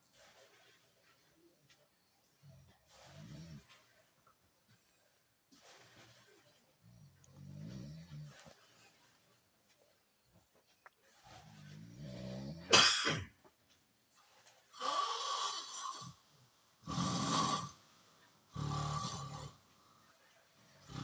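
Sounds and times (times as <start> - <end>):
loud rough snoring: 3.0 - 3.8, 7.3 - 8.4, 11.5 - 12.8, 14.8 - 16.2, 16.8 - 17.8, 18.5 - 19.6, 20.8 - 21.0
sharp snort: 11.1 - 13.3, 16.9 - 17.8, 18.5 - 19.6, 20.8 - 21.0.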